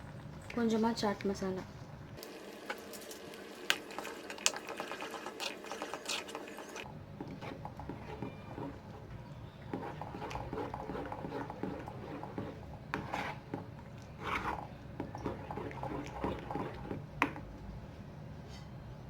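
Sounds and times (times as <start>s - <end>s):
spoon scraping cooking pan: 7.2s - 17.4s.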